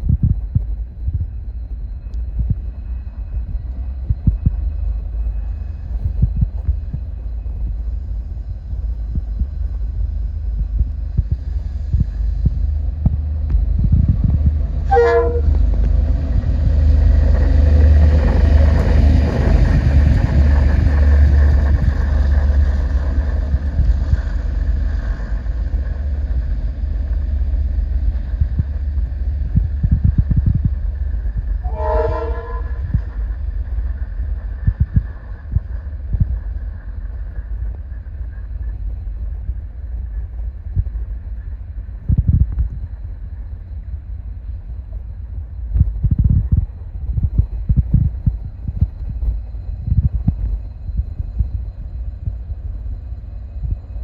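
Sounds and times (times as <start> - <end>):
train rumble and wheel clatter: 0.0 - 54.0
locomotive horn blasts: 14.8 - 15.6, 31.6 - 32.9.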